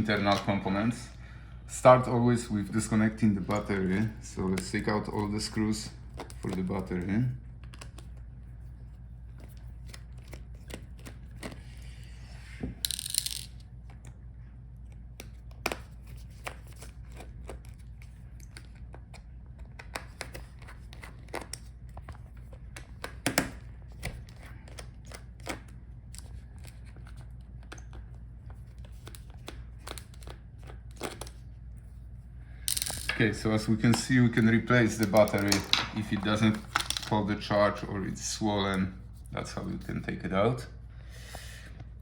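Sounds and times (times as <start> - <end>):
low steady hum: 0.0 - 42.0.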